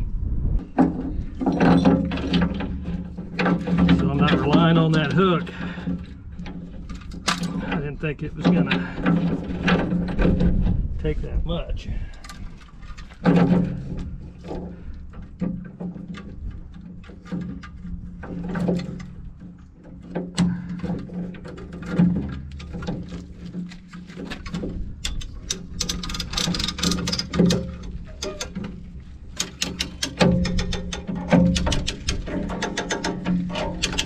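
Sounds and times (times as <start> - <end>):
chain and metal panel creaking: 0.6 - 11.2, 12.0 - 34.0
metal scraping: 12.1 - 34.0.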